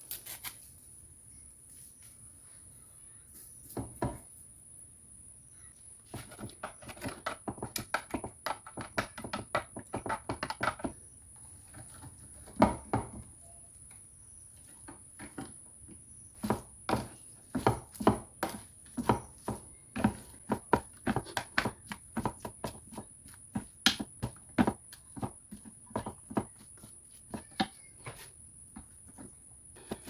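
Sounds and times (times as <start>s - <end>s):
faint high whine: 0.6s - 6.1s, 13.2s - 14.7s
kitchen knocks and clicks: 6.2s - 11.0s.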